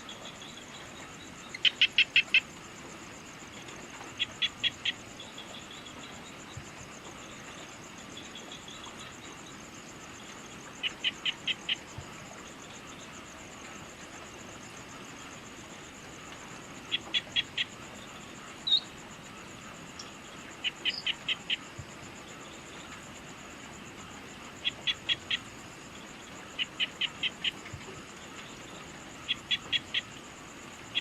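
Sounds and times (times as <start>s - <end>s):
pulsing insect trill: 0.0s - 31.0s.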